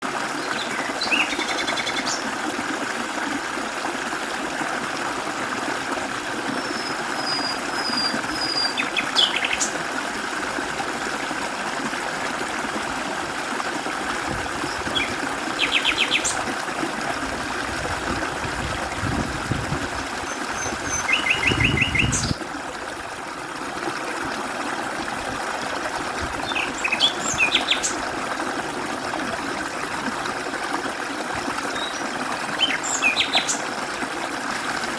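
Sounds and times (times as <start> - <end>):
mountain stream running: 0.0 - 34.9
small birds trilling: 6.6 - 9.8, 14.7 - 16.4, 20.3 - 22.4, 26.4 - 28.0, 31.7 - 33.7.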